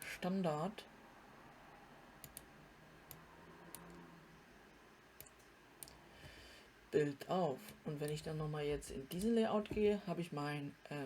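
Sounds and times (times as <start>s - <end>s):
computer mouse clicks: 2.2s - 2.5s, 3.1s - 4.1s, 5.2s - 6.0s.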